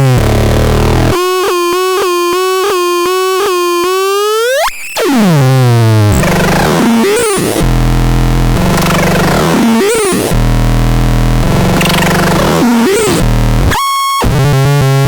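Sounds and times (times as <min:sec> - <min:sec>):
low buzzy synthesizer drone: 0:06.0 - 0:13.7
synthesizer pulsing tone: 0:06.1 - 0:10.4, 0:11.4 - 0:13.3.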